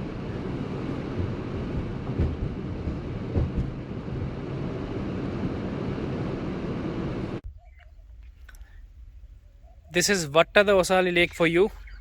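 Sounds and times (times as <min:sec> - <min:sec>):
car road and engine rumble: 0:00.0 - 0:07.4
brief thumps: 0:01.2 - 0:04.3.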